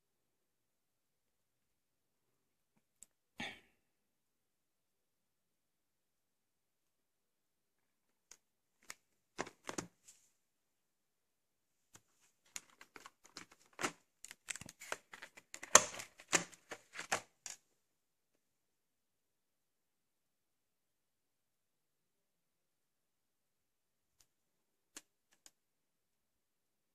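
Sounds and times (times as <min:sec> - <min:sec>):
packaging crinkling: 0:12.5 - 0:17.3
plastic tape cases clicking: 0:12.5 - 0:17.6.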